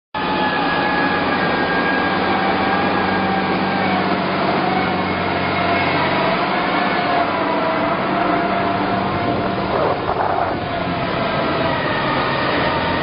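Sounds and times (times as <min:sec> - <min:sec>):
heavy machine engine running: 0:00.2 - 0:13.0
high whine: 0:07.8 - 0:12.2.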